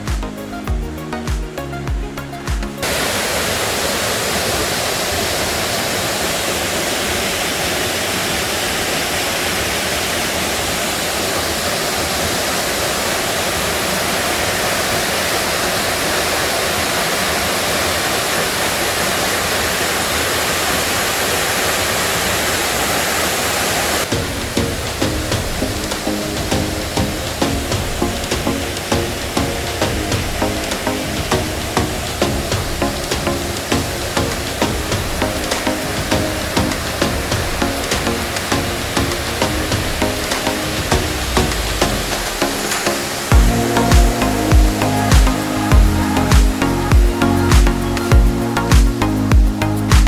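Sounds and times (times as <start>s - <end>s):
background music: 0.0s - 3.2s, 24.1s - 50.0s
waterfall rushing: 0.0s - 50.0s.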